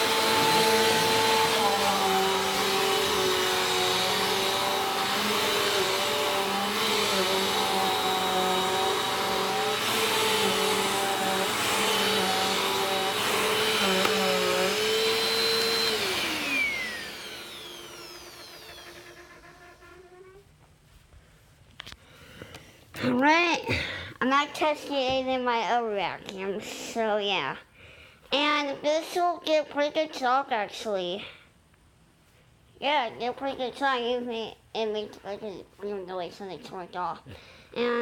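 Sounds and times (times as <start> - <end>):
vacuum cleaner running: 0.0 - 20.4
vacuum motor spinning down: 0.0 - 20.4.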